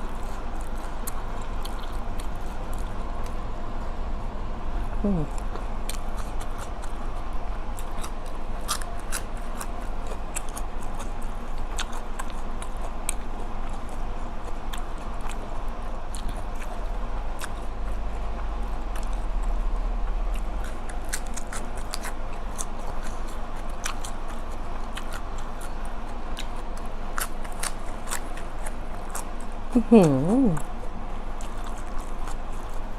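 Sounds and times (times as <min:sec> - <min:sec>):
low hum: 0:00.0 - 0:23.5
chewing with wet crunches: 0:00.0 - 0:32.9.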